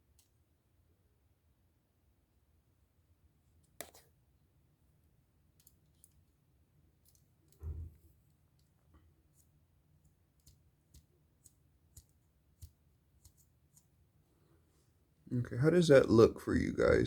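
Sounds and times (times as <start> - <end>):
faint clicks of plastic parts: 0.0 - 0.4, 5.5 - 14.4.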